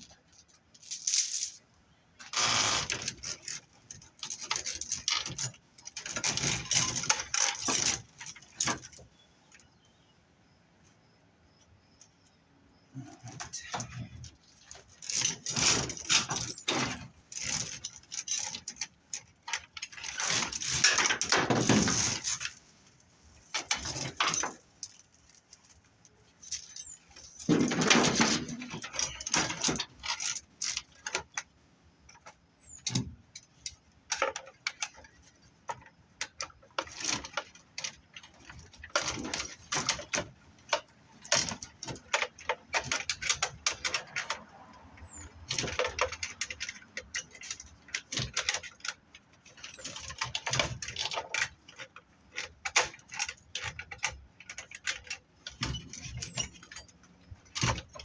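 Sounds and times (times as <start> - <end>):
wire scraping rasps: 2.3 - 8.0.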